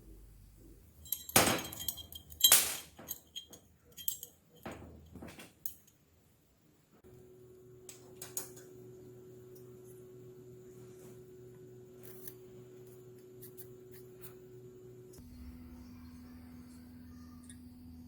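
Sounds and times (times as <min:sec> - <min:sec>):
steady hum with held tone: 0:00.0 - 0:18.0
hard objects clanking and clinking: 0:01.0 - 0:05.9.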